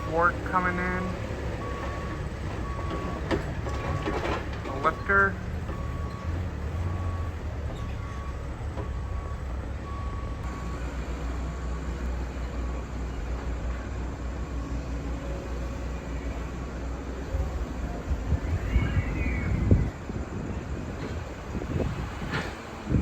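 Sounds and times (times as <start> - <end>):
reversing alarm beeping: 0.0 - 12.0
heavy machinery engine rumble: 0.0 - 23.0.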